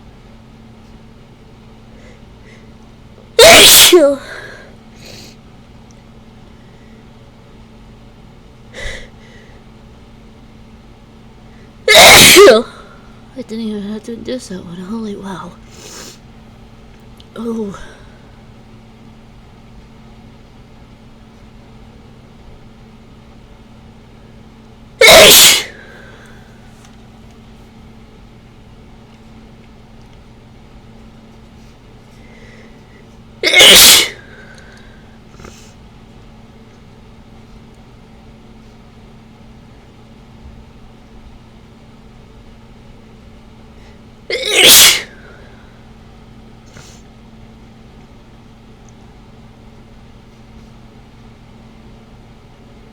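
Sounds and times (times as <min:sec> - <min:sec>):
low steady hum: 0:00.0 - 0:52.9
person sneezing: 0:03.4 - 0:05.3, 0:11.9 - 0:13.0, 0:25.0 - 0:26.2, 0:33.4 - 0:34.6, 0:44.3 - 0:45.4.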